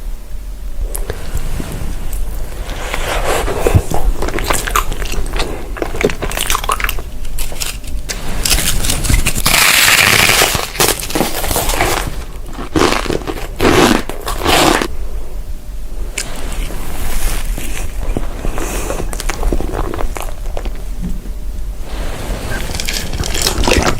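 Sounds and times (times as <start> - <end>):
crisp food crunching: 2.1 - 14.9, 16.2 - 21.1, 22.5 - 23.9.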